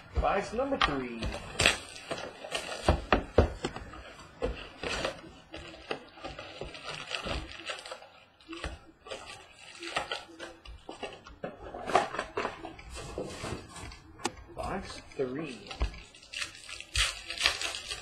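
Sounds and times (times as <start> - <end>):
cardboard box and packs rustling: 0.0 - 16.3.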